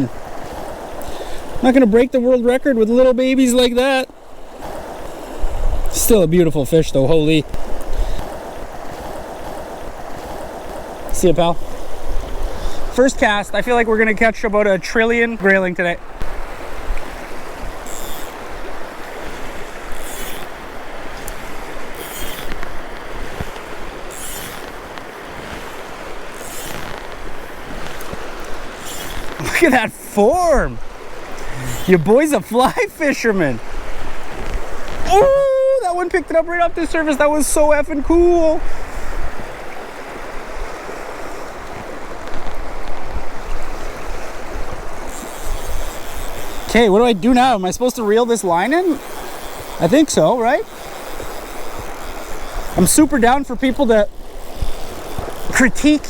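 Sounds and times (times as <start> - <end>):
river water rushing: 0.0 - 56.0
wind buffeting microphone: 4.2 - 15.4, 33.5 - 47.3
fly line swishing: 7.5 - 13.0, 16.3 - 29.8, 31.1 - 32.1, 38.9 - 56.0.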